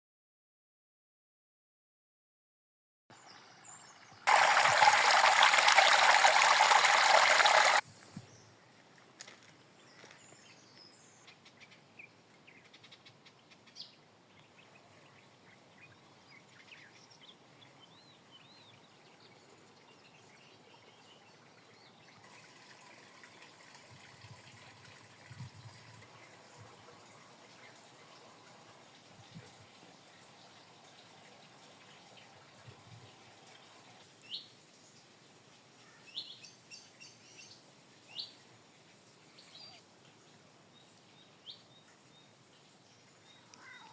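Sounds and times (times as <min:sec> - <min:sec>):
water trickling: 0:03.2 - 0:07.8, 0:22.2 - 0:35.7
loud rush of water: 0:04.3 - 0:07.8.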